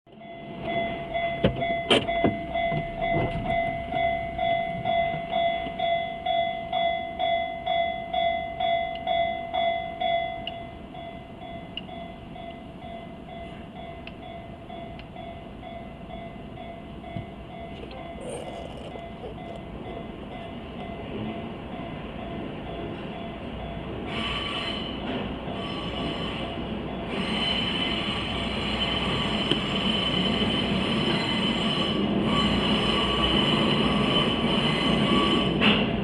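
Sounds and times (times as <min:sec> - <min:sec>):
level crossing bell clanging: 0:00.2 - 0:23.9.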